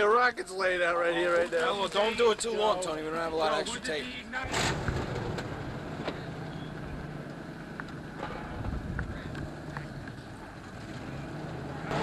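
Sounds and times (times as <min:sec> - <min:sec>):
steady low rumble: 0:04.5 - 0:12.0
wind on microphone: 0:08.4 - 0:09.7.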